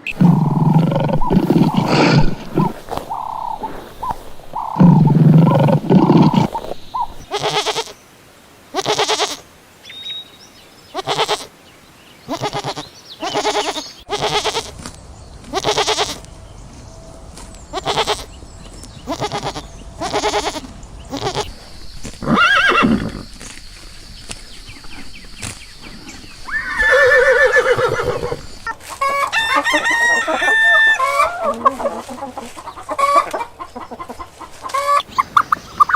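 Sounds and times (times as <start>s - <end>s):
animal bleating: 0.1s - 8.0s, 8.7s - 9.4s, 10.9s - 11.5s, 12.3s - 14.8s, 15.5s - 16.3s, 17.7s - 18.3s, 19.0s - 21.6s, 26.5s - 32.2s.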